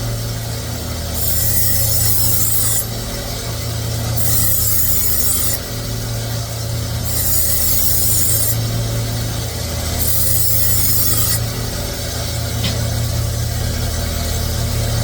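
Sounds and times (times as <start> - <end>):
steady low hum: 0.0 - 15.0
knife scraping on sharpener: 1.2 - 2.9, 4.2 - 5.6, 7.1 - 8.6, 10.0 - 11.4.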